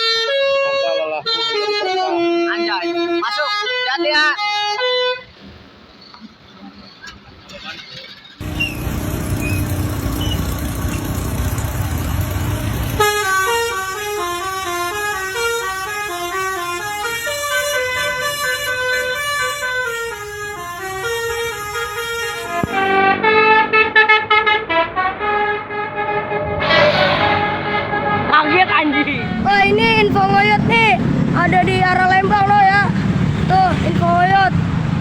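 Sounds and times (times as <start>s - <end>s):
bus horn playing a melody: 0.0s - 5.4s, 8.4s - 31.1s
engine and road rumble: 8.1s - 25.4s, 29.0s - 35.0s.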